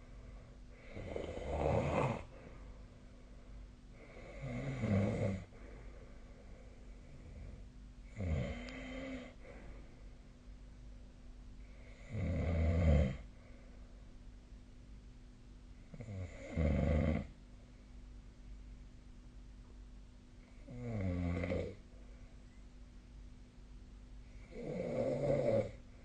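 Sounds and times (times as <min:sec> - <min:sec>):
person snoring: 0:00.8 - 0:02.4, 0:04.0 - 0:05.5, 0:08.1 - 0:09.4, 0:11.8 - 0:13.2, 0:15.9 - 0:17.3, 0:20.6 - 0:21.8, 0:24.4 - 0:25.8.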